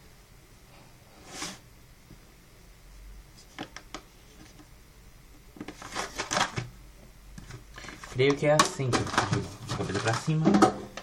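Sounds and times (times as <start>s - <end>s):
paper bag rustling: 5.6s - 6.7s, 7.7s - 10.4s.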